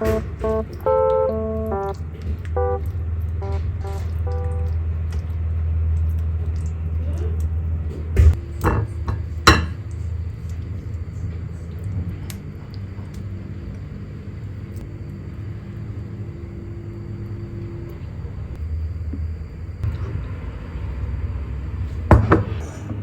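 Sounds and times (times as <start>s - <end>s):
faint high whine: 0.0s - 4.9s
dishes clinking: 8.6s - 9.8s.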